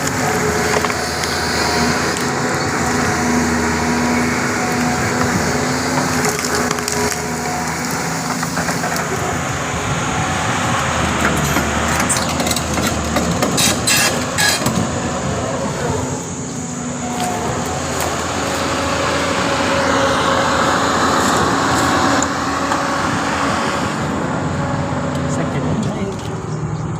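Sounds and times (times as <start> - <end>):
excavator diesel engine running: 0.0 - 26.9.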